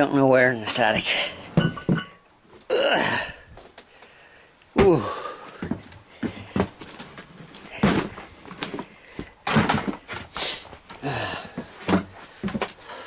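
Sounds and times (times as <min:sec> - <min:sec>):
knocks and thumps: 0:01.5 - 0:02.2, 0:07.7 - 0:10.3
man grunting: 0:02.7 - 0:03.4, 0:04.8 - 0:05.3
man breathing heavily: 0:03.0 - 0:07.0, 0:07.6 - 0:13.0.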